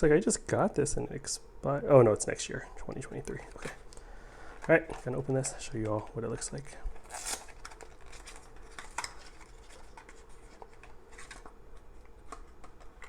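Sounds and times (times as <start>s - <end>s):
packaging rustling: 3.3s - 13.0s.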